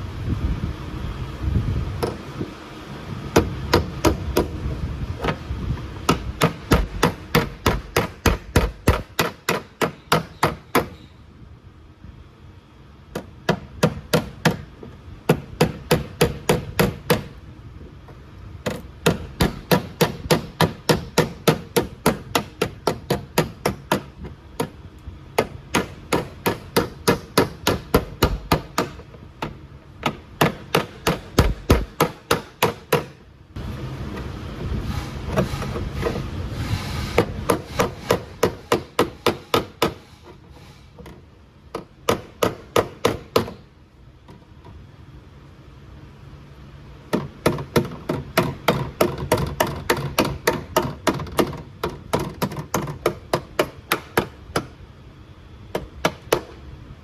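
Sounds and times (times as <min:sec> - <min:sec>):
hammer striking sheet metal: 0:36.8 - 0:40.3.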